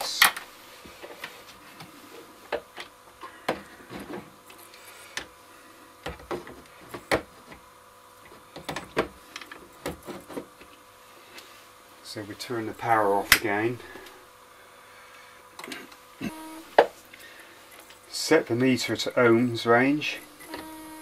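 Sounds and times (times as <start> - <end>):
faint steady tone: 16.2 - 17.6.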